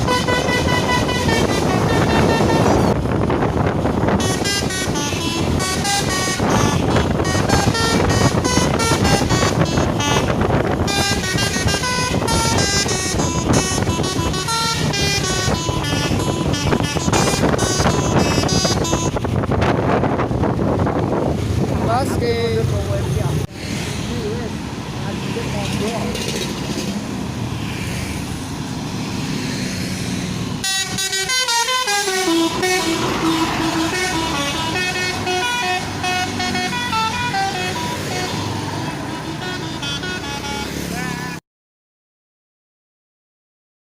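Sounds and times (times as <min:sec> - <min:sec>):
multi-tone bus horn tune: 0:00.0 - 0:19.3, 0:30.6 - 0:41.4.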